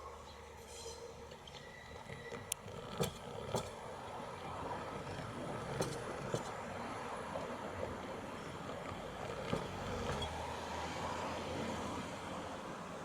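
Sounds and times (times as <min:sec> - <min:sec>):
train rumble: 0:00.6 - 0:13.0
train wheels clacking over rail joints: 0:01.3 - 0:11.0.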